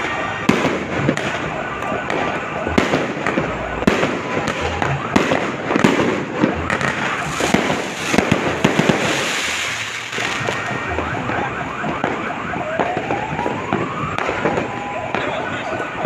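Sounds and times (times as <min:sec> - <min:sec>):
firework bangs and crackles: 0:00.0 - 0:16.0
rising firework whistles: 0:02.8 - 0:11.2.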